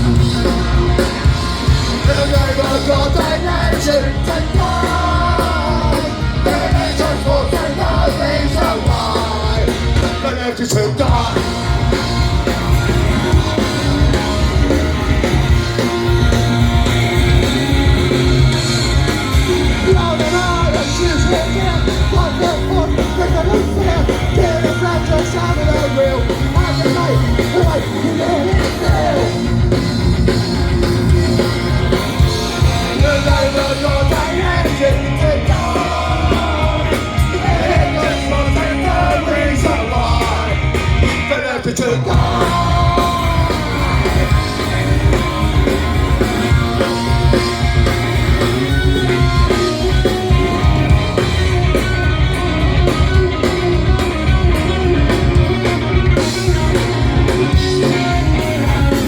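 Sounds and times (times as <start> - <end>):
punk rock band playing: 0.0 - 59.0
shouted vocals: 2.0 - 15.3, 19.4 - 29.8, 31.1 - 53.9.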